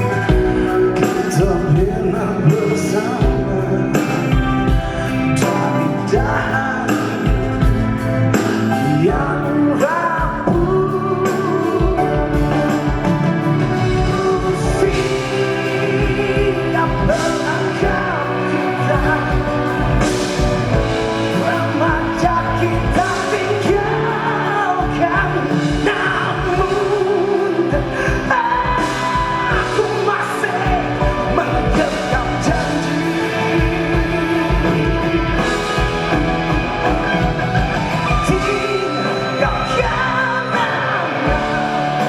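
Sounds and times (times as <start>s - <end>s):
band playing a song: 0.0s - 42.0s
drums beating: 0.0s - 42.0s
person singing: 0.0s - 42.0s.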